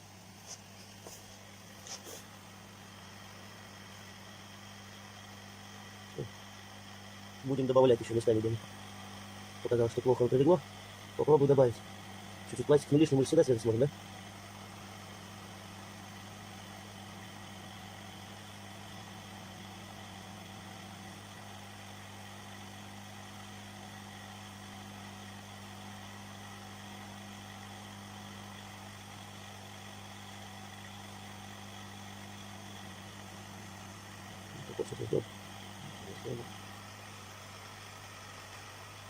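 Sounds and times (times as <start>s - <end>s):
hot-air blower humming: 0.0s - 39.0s.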